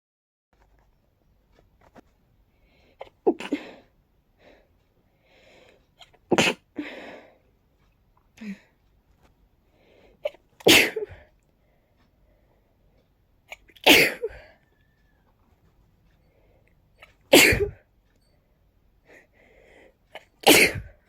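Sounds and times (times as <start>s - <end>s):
person sneezing: 6.3s - 6.6s, 10.7s - 11.2s, 13.8s - 14.5s, 17.3s - 17.8s, 20.4s - 21.0s.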